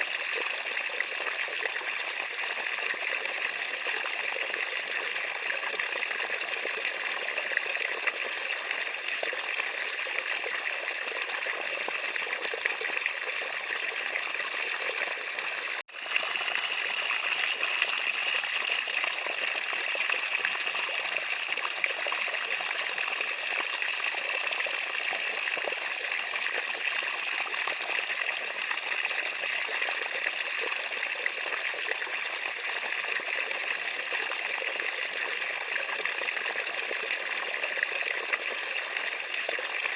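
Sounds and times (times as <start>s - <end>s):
water trickling: 11.2s - 33.8s.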